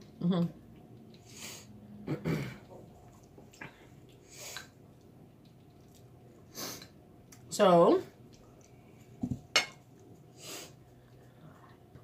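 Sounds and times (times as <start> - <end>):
people talking: 0.2 - 0.6, 7.5 - 8.1
people chewing: 2.5 - 7.4, 8.3 - 9.2, 9.8 - 12.0.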